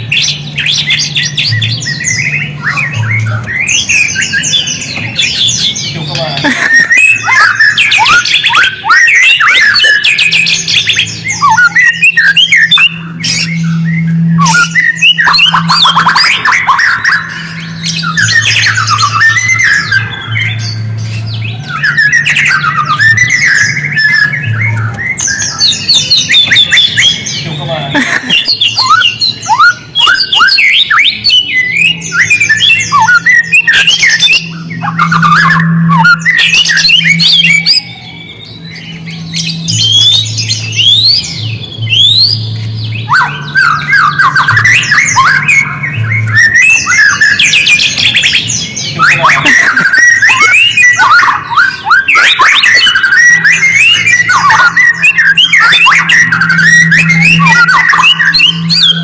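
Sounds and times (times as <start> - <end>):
songbird chattering calls: 0.0 - 59.0
low hum: 10.4 - 28.4, 33.0 - 50.3, 55.6 - 59.0.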